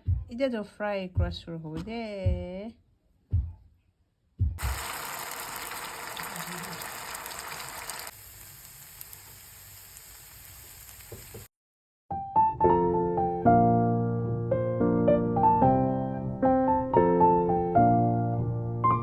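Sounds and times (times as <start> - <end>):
food sizzling in frying pan: 4.6 - 11.5.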